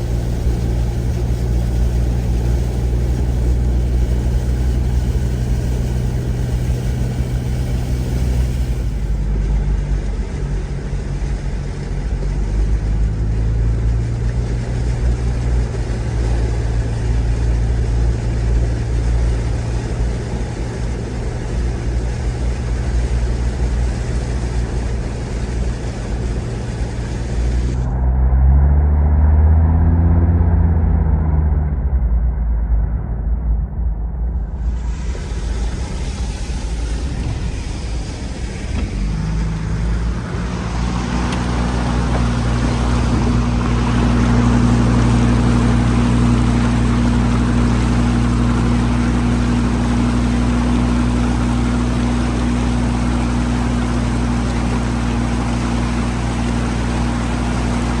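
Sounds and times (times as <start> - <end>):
steady hiss: 0.0 - 9.4
engine revving: 0.0 - 10.5, 26.0 - 58.0
vehicle engines running: 0.0 - 58.0.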